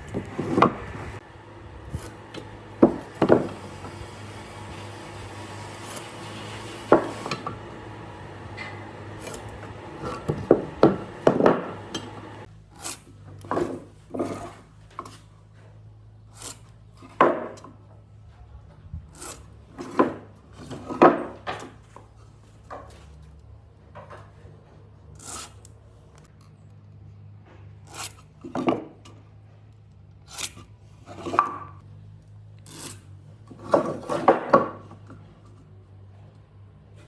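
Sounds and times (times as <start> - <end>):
rasping strokes against wood: 1.8 - 15.2.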